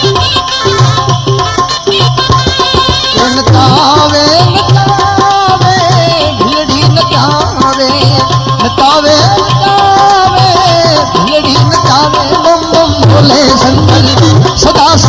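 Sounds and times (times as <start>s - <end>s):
devotional melody: 0.0s - 15.0s
tabla rhythm: 0.0s - 15.0s.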